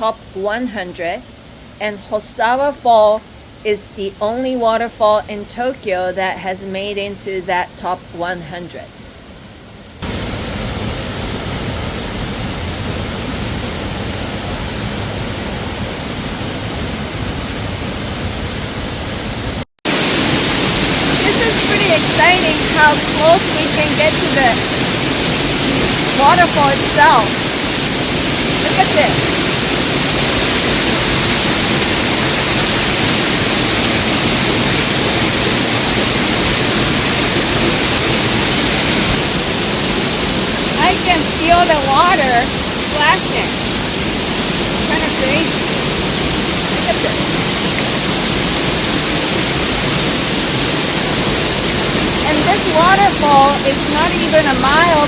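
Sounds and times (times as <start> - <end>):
waterfall rushing: 7.6 - 55.0.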